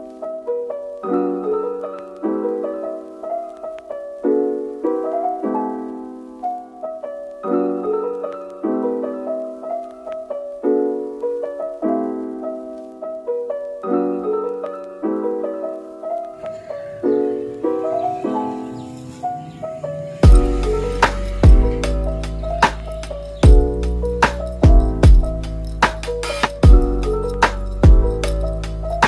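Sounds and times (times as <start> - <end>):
soft piano playing slow chords: 0.0 - 29.0.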